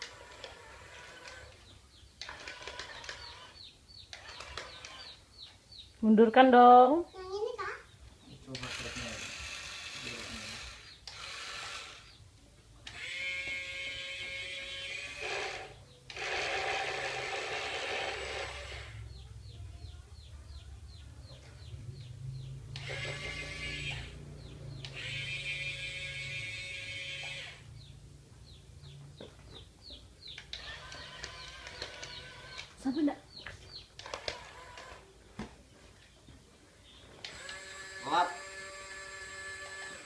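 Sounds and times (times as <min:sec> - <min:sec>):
small electric motors whirring: 0:00.0 - 0:05.2, 0:08.5 - 0:12.2, 0:12.8 - 0:19.2, 0:22.7 - 0:27.7, 0:30.3 - 0:33.1, 0:34.0 - 0:35.1, 0:37.1 - 0:40.0.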